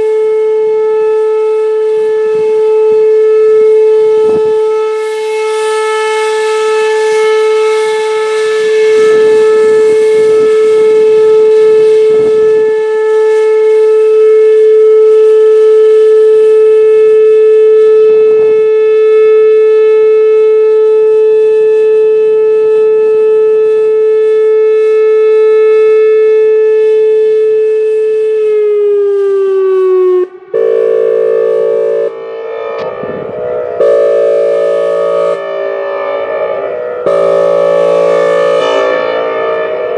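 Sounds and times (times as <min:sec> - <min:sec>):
electronic siren steady tone: 0:00.0 - 0:39.9
multi-tone air horn signal: 0:00.0 - 0:39.9.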